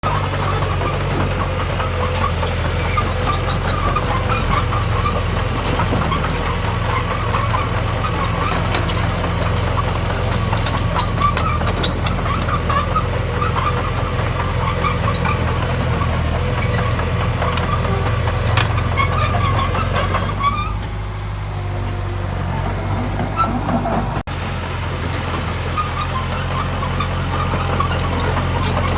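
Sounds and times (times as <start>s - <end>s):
bulldozer diesel engine running: 0.0s - 28.9s.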